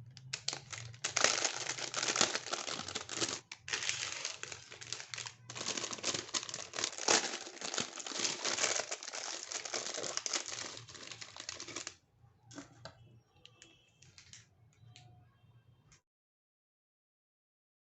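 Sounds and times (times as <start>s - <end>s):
packaging crinkling: 0.1s - 12.8s.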